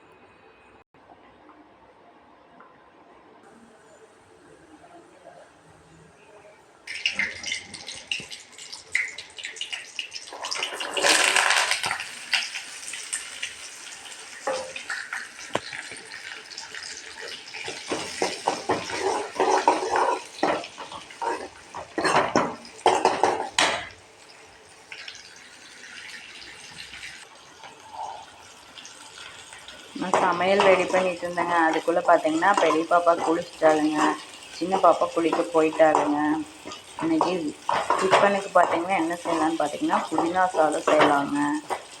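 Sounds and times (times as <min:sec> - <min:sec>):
kitchen tap running: 0:06.9 - 0:42.0
utensils and dishes clattering: 0:10.3 - 0:12.5, 0:16.8 - 0:24.0, 0:30.0 - 0:42.0.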